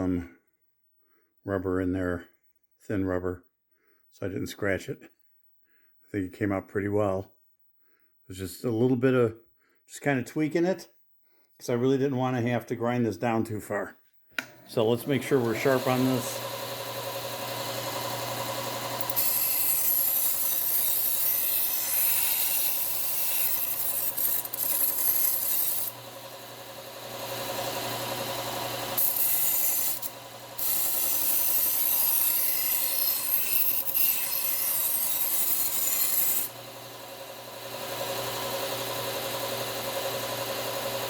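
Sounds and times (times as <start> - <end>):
belt sander humming: 14.4 - 41.0
knife blade grinding on belt: 19.0 - 26.0, 29.0 - 36.5.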